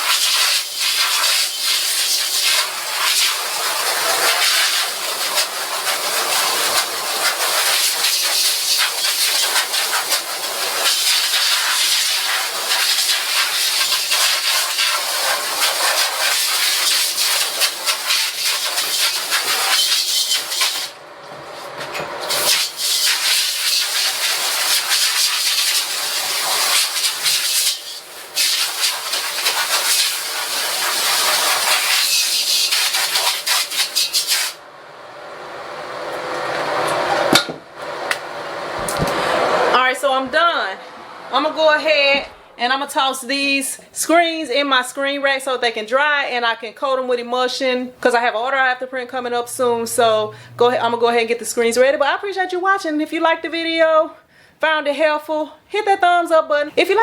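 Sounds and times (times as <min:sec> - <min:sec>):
pressure washer spraying water: 0:00.0 - 0:21.0, 0:22.2 - 0:34.6.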